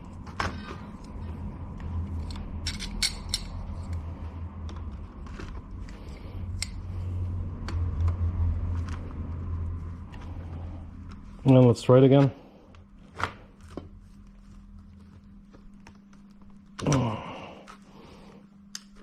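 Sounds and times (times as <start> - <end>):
steady low hum: 0.0 - 19.0
tools and metal parts clinking: 2.1 - 4.0.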